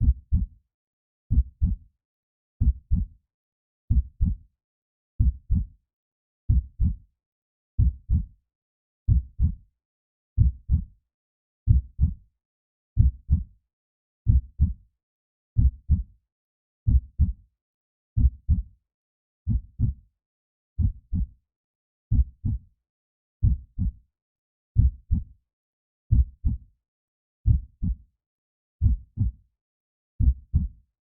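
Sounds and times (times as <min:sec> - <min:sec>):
heartbeat: 0:00.0 - 0:00.5, 0:01.3 - 0:01.8, 0:02.6 - 0:03.1, 0:03.9 - 0:04.4, 0:05.2 - 0:05.7, 0:06.5 - 0:07.0, 0:07.8 - 0:08.3, 0:09.1 - 0:09.6, 0:10.4 - 0:10.9, 0:11.7 - 0:12.2, 0:13.0 - 0:13.5, 0:14.3 - 0:14.8, 0:15.6 - 0:16.1, 0:16.9 - 0:17.4, 0:18.2 - 0:18.7, 0:19.5 - 0:20.0, 0:20.8 - 0:21.3, 0:22.1 - 0:22.6, 0:23.4 - 0:24.0, 0:24.8 - 0:25.3, 0:26.1 - 0:26.6, 0:27.5 - 0:28.0, 0:28.8 - 0:29.4, 0:30.2 - 0:30.8.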